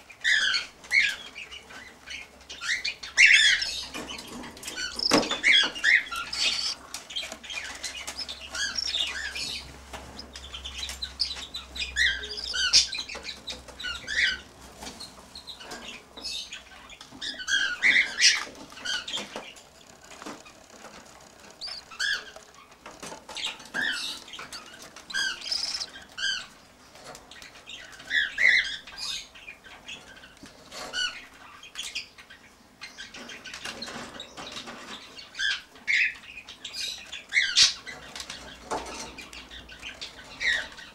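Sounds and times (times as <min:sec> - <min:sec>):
cockatiel chick chirping: 0:02.5 - 0:14.5, 0:21.6 - 0:22.4, 0:23.8 - 0:26.5.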